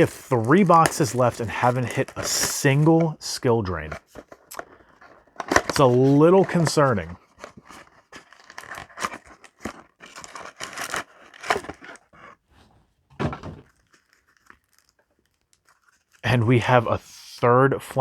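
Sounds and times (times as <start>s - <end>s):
foil wrapper crinkling and rustling: 0.0s - 3.2s, 3.8s - 12.4s, 13.6s - 16.3s.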